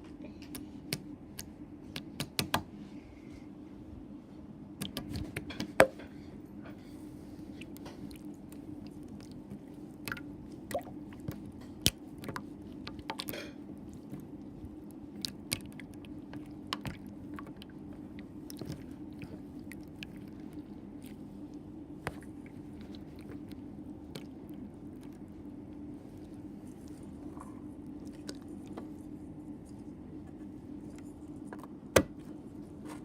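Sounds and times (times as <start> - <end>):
steady low hum: 0.0 - 33.0
slime squishing with wet clicks: 0.4 - 2.6, 4.8 - 5.8, 7.4 - 29.9.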